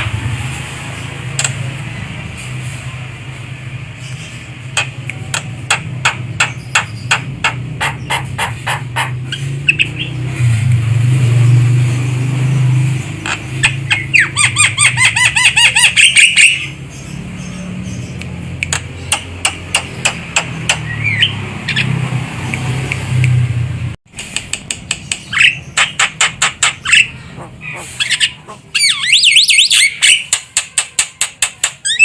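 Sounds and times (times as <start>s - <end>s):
bird calling: 4.1s - 10.2s, 25.0s - 30.8s.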